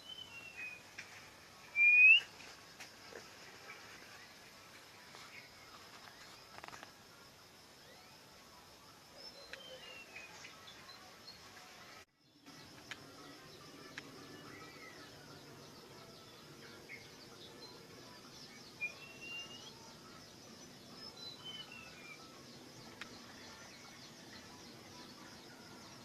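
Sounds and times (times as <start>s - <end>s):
songbird whistling: 0.0s - 0.8s, 1.7s - 2.4s, 18.7s - 19.8s.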